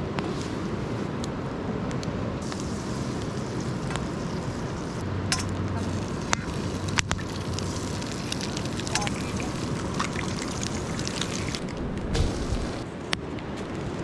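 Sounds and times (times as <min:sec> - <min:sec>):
campfire burning: 0:00.0 - 0:14.0
fire crackling pops: 0:01.9 - 0:14.0.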